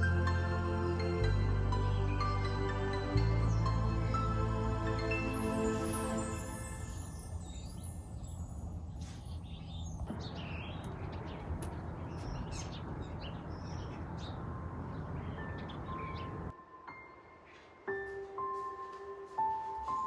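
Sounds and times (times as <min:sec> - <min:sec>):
small birds chirping: 0:05.2 - 0:16.5.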